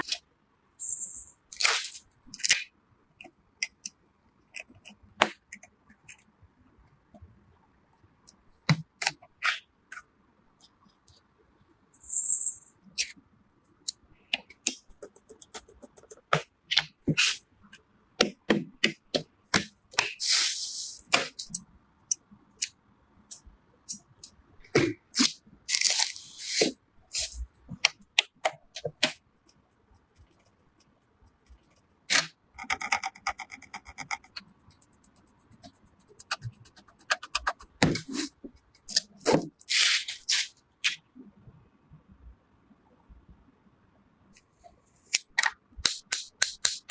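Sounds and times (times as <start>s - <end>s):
plastic and metal clicks and snaps: 45.1s - 46.9s.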